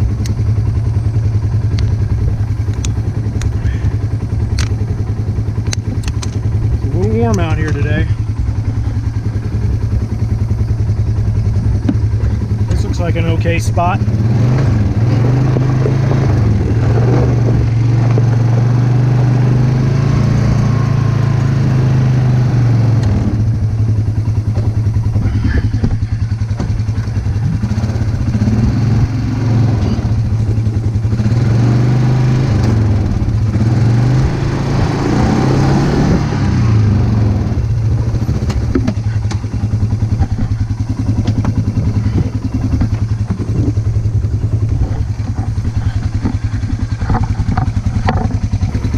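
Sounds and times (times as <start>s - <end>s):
engine running: 0.0s - 48.9s
light clatter: 44.6s - 48.9s.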